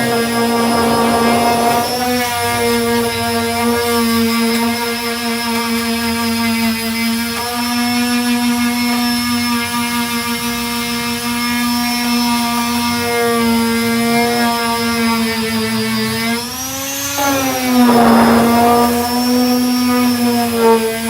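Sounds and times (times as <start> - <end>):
power sander whine: 0.0 - 3.4, 16.0 - 19.8.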